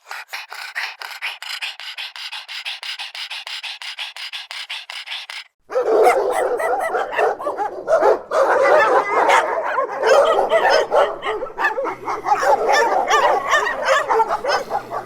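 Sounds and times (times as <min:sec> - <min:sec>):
dogs barking and yipping: 0:00.0 - 0:15.0
dogs whimpering: 0:06.0 - 0:15.0.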